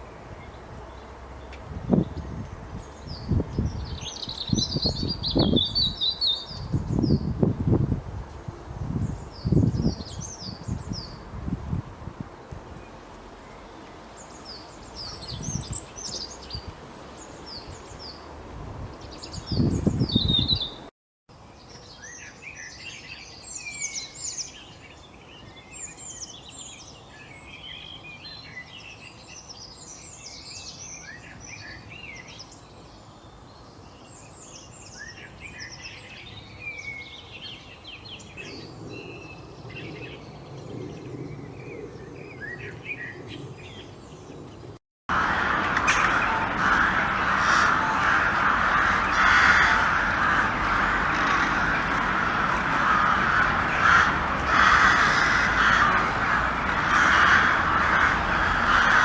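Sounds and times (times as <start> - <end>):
songbirds chirping and singing: 0.4 - 7.4, 18.9 - 20.9, 21.5 - 44.8, 45.5 - 59.0
loud rough sound: 45.1 - 59.0.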